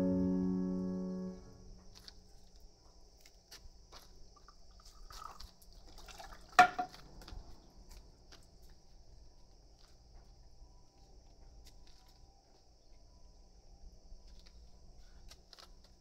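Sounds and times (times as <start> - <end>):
water trickling and dripping: 4.4 - 7.4
bamboo water knocker knock: 6.6 - 6.9.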